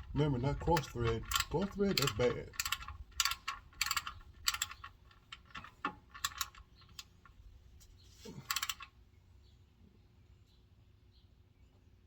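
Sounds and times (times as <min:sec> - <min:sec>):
ratchet wrench clicking: 0:00.0 - 0:07.1, 0:08.5 - 0:08.9.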